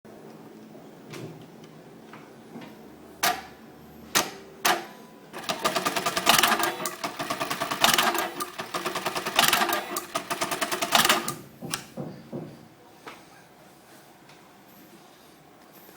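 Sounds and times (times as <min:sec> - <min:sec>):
sewing machine stitching: 0:05.4 - 0:11.5
sewing machine clicks: 0:05.4 - 0:11.9.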